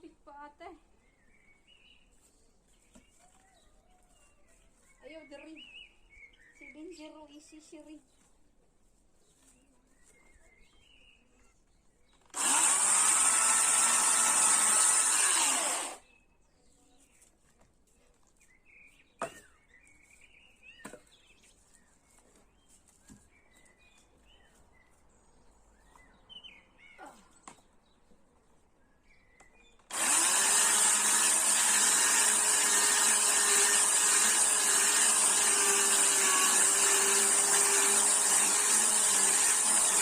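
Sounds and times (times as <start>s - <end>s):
chainsaw cutting wood: 12.3s - 16.0s, 29.9s - 40.0s
birds chirping: 18.1s - 29.9s.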